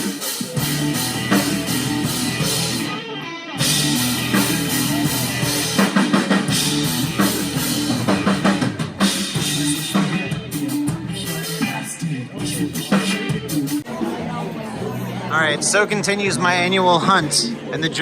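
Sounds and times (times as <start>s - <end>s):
rock music with drums and guitar: 0.0s - 13.9s.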